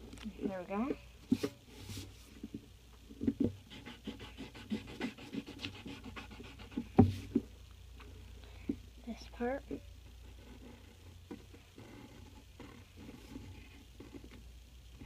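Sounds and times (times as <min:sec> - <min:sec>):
pencil scratching on paper: 0:03.6 - 0:07.0.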